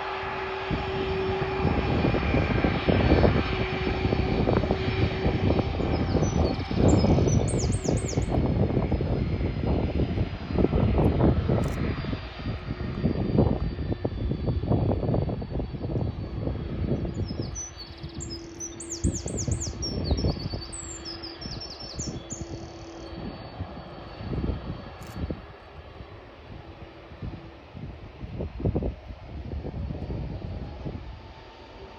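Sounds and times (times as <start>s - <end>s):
jet engines rumbling: 0.0s - 31.9s
small bird chirping: 6.0s - 8.3s, 17.2s - 22.9s.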